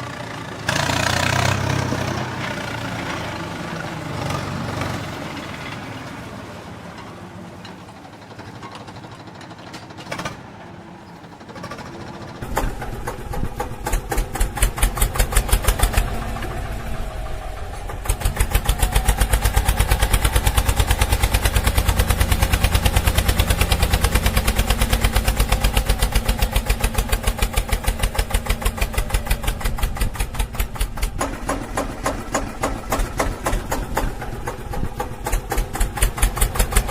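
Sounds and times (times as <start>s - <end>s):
small engine running: 11.1s - 36.9s.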